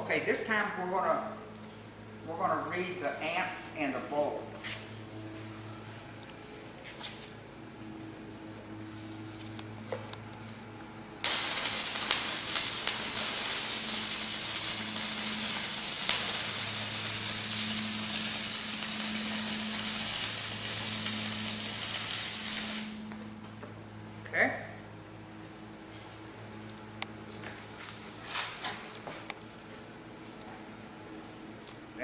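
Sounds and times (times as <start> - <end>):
welding arc crackling sizzle: 8.1 - 24.3, 26.4 - 29.5.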